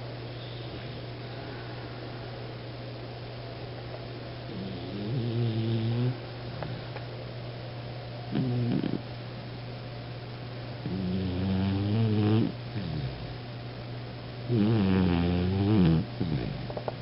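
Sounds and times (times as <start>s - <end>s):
dog snoring: 4.5s - 6.8s, 8.3s - 9.0s, 10.8s - 13.4s, 14.5s - 16.8s.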